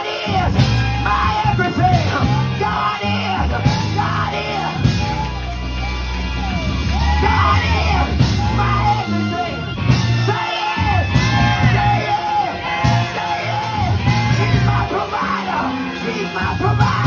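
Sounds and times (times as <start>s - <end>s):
church music with low bass notes: 0.0s - 17.0s
shouts: 0.0s - 17.0s
person singing wavering phrases: 0.1s - 5.3s.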